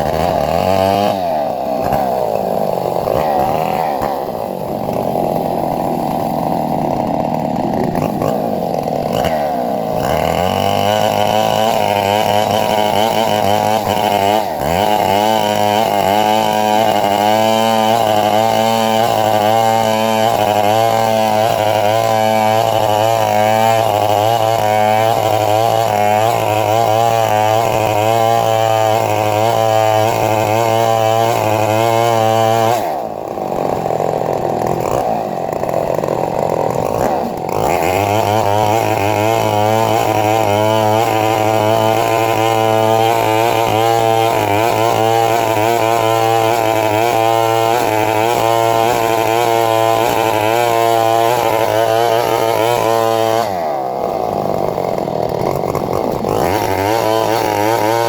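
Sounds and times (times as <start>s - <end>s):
chainsaw cutting wood: 0.0s - 58.0s.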